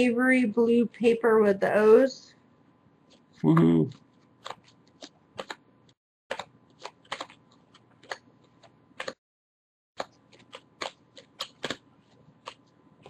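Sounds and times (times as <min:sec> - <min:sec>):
cards clicking and sliding: 0:04.4 - 0:05.6, 0:06.3 - 0:09.2, 0:10.0 - 0:12.8.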